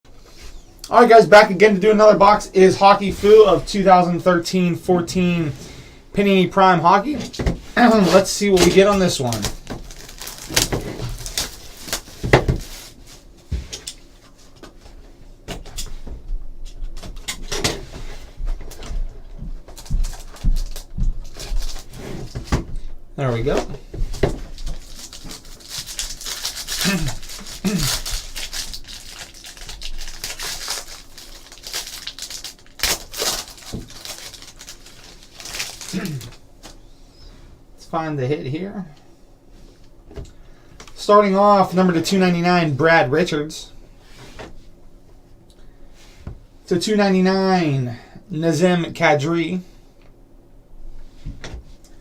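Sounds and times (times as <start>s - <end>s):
packaging rustling and tearing: 7.8s - 13.1s, 19.7s - 22.5s, 24.1s - 36.8s.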